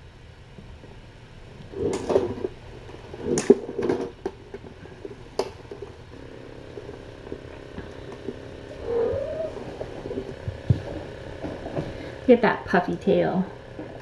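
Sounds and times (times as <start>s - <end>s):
cats scuffling: 0.6s - 14.0s.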